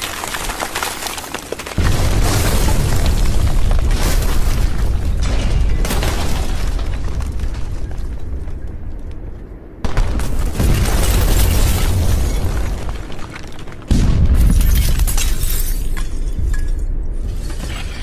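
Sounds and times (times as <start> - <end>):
rumble with crackling debris: 0.0 - 18.0
explosion blasts: 1.8 - 8.4, 13.9 - 15.1.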